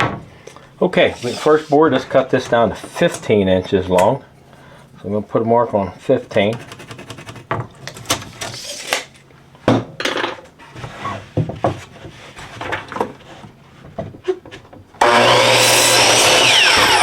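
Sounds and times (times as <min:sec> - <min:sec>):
power saw cutting board: 0:01.0 - 0:02.0, 0:15.0 - 0:17.0.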